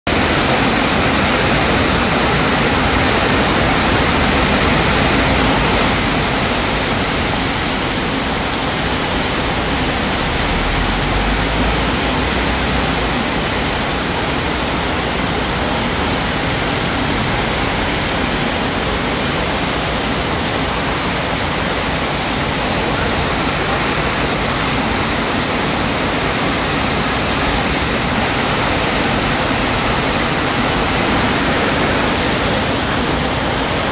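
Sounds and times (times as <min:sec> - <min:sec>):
rain falling steadily: 0:00.1 - 0:33.9.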